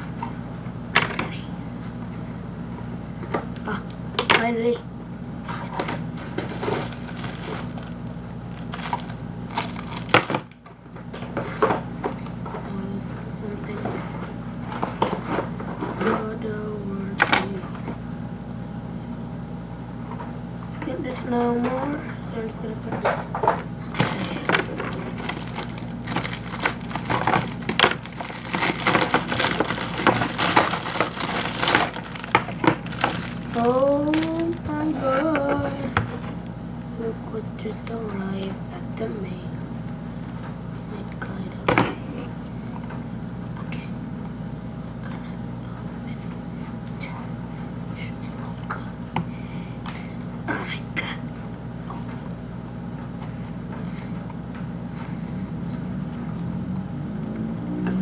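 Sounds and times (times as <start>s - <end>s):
cardboard and plastic handling: 6.2s - 10.4s, 24.0s - 35.9s
low hum: 21.6s - 42.3s.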